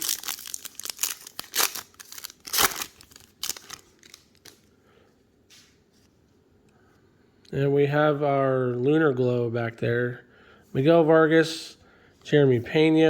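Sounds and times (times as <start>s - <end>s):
card pack wrapper tearing: 0.0s - 4.6s.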